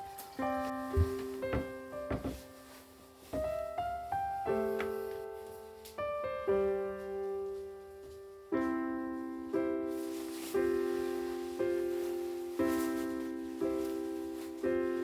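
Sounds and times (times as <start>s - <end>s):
soft piano chords: 0.0s - 15.0s.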